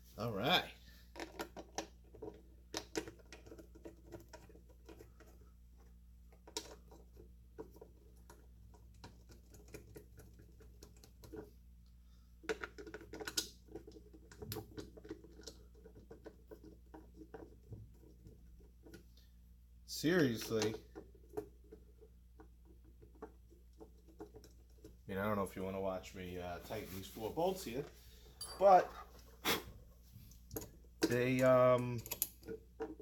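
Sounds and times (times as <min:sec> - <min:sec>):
low steady hum: 0:13.5 - 0:33.0
small parts clicking and scraping: 0:27.4 - 0:33.0.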